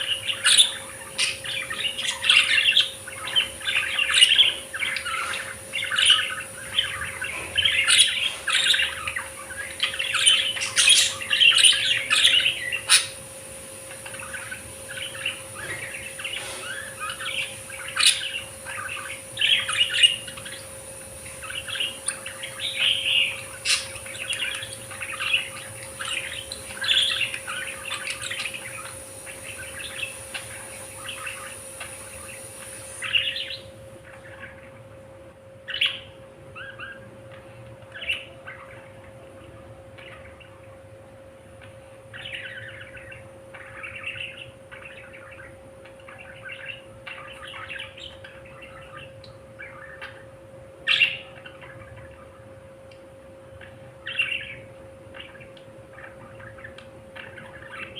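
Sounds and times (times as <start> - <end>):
budgerigars chirping and chattering: 0.0 - 57.9
faint steady hum: 0.0 - 57.9.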